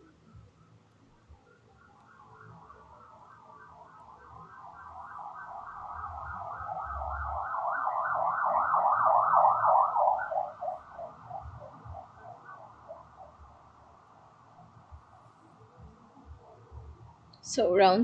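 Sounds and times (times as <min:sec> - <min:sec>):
rapid electronic warble: 0:03.9 - 0:14.0.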